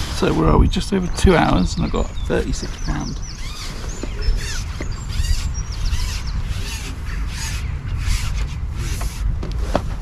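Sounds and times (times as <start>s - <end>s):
birds calling in short arched calls: 1.8s - 8.4s.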